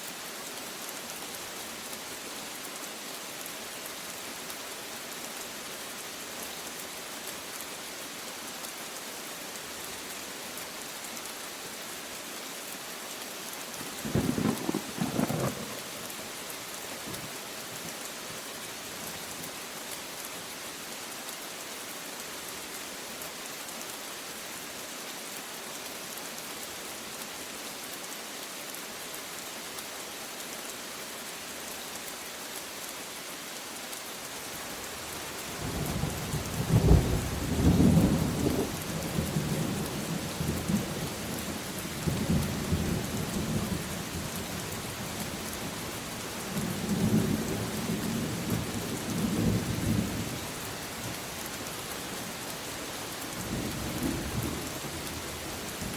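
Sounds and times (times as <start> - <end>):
steady rain falling: 0.0 - 55.9
thunder crack and rumbling: 14.1 - 15.9.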